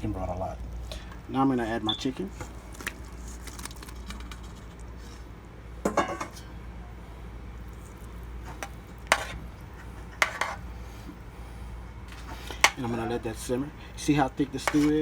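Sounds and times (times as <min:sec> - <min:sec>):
metal utensil clanking on pot: 0:05.9 - 0:06.5, 0:12.6 - 0:13.0, 0:14.7 - 0:15.0.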